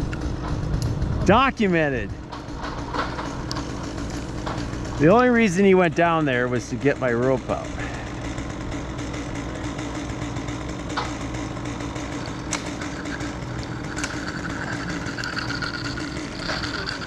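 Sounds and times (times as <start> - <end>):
chainsaw idling: 0.0 - 17.0.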